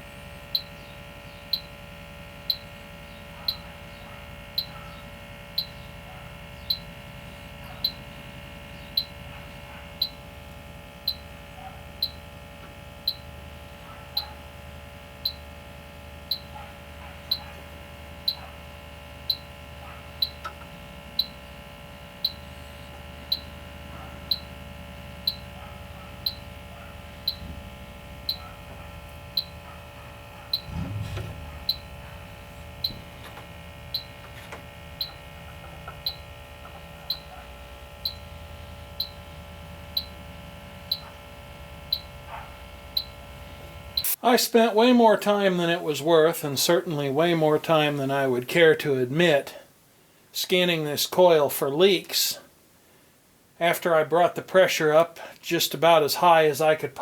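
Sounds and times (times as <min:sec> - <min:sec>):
leak detector beeping: 0:00.0 - 0:44.2
detector hum: 0:00.0 - 0:49.3.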